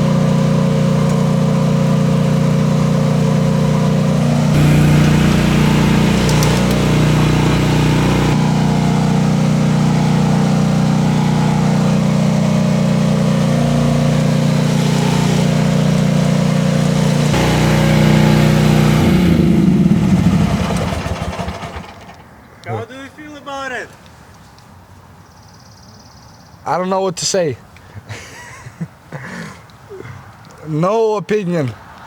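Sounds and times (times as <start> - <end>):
excavator engine running: 0.0 - 22.4.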